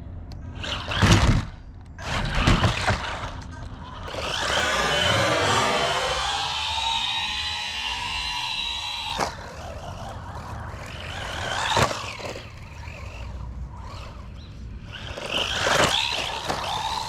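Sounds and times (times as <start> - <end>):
toy truck motor whining: 0.5 - 17.0
tyre and drivetrain rush: 2.0 - 17.0.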